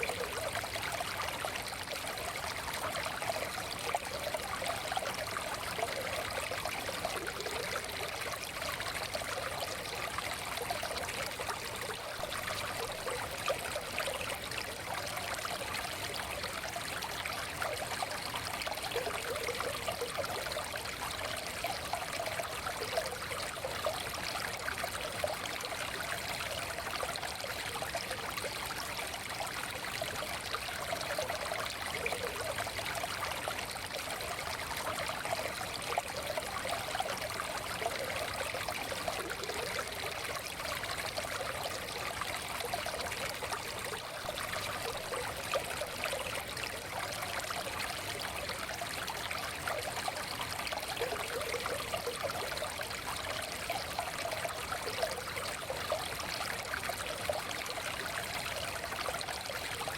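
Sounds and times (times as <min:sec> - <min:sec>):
stream babbling over stones: 0:00.0 - 0:59.9.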